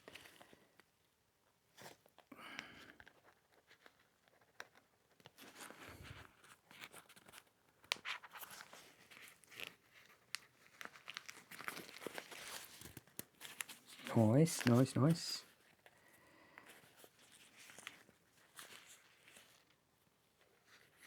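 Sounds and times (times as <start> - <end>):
fabric strap rustling: 5.4 - 19.8.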